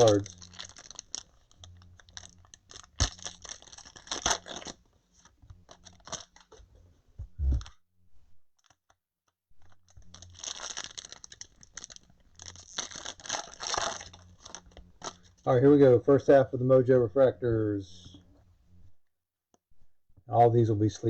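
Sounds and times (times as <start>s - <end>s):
foil wrappers crinkling and tearing: 0.0s - 6.6s, 9.6s - 15.4s.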